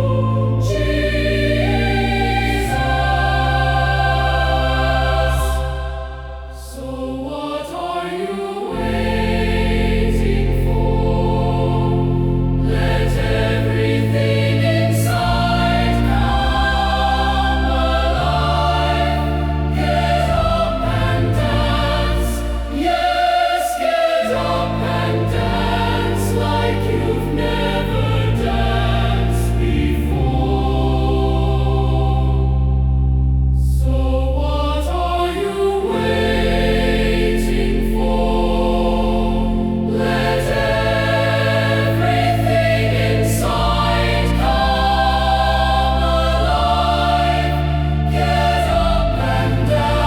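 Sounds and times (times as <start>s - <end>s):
deep held bass notes: 0.0s - 6.6s, 8.7s - 23.2s, 24.2s - 50.0s
choir singing in harmony: 0.0s - 50.0s.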